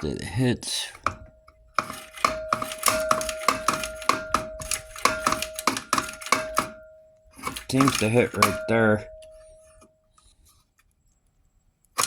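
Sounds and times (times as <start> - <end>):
faint steady ringing tone: 0.0 - 10.6
rapid metallic clicking and knocking: 1.0 - 6.8, 7.4 - 8.7.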